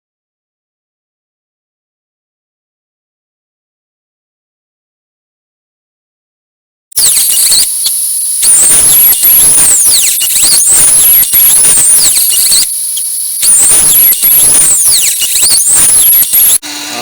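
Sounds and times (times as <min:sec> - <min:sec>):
power tool high-pitched whine: 0:07.0 - 0:17.0.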